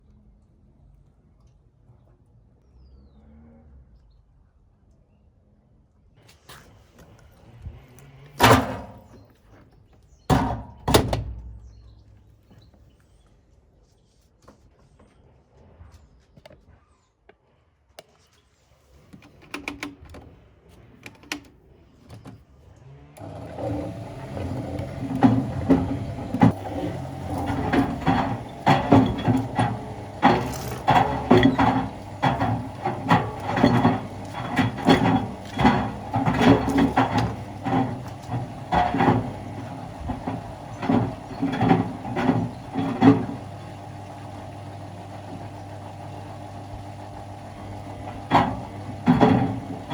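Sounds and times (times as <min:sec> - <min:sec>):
washing machine motor humming: 0:08.4 - 0:09.2, 0:10.3 - 0:11.8, 0:23.2 - 0:49.9.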